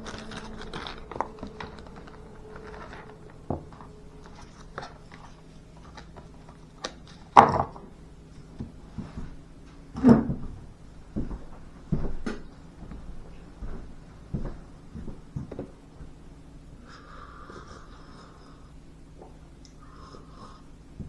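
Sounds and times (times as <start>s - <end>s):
knives and boxes knocking on table: 7.4s - 7.8s.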